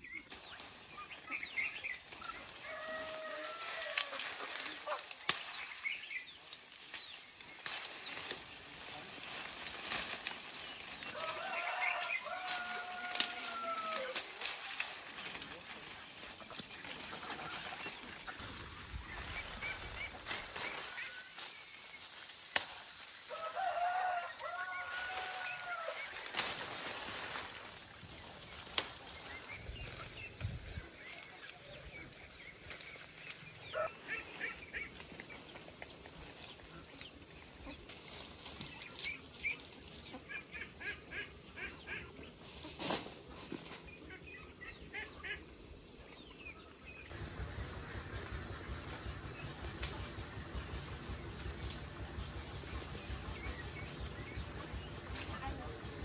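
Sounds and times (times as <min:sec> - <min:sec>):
low rumble: 0:47.1 - 0:56.0.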